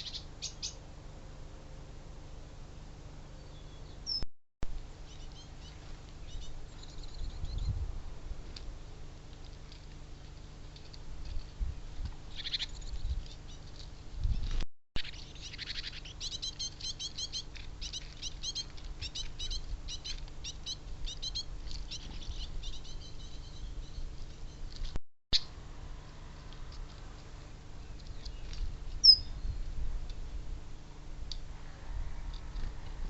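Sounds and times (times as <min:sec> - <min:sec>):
small birds chirping: 0:00.0 - 0:00.8, 0:03.3 - 0:04.2, 0:05.0 - 0:07.8, 0:12.3 - 0:25.5, 0:27.8 - 0:29.8.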